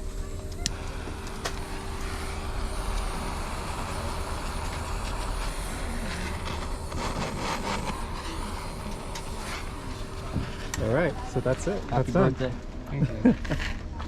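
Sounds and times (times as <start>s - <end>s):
soldering iron hissing: 0.0s - 12.5s
low rumble: 0.0s - 13.9s.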